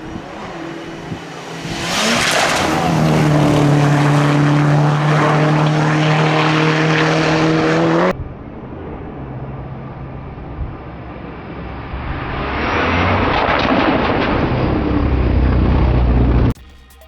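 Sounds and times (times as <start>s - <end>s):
rally car engine at high revs: 0.0s - 8.2s, 12.4s - 16.5s.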